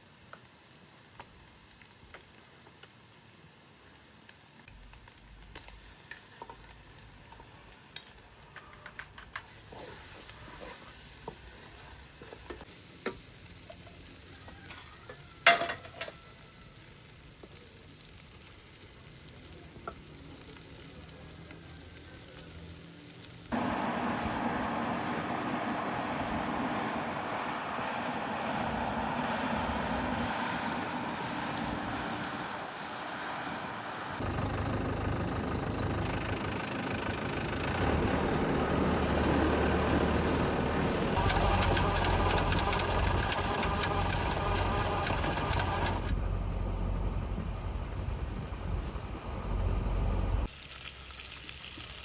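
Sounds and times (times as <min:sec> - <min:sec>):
loud steady rushing noise: 0:23.6 - 0:28.4.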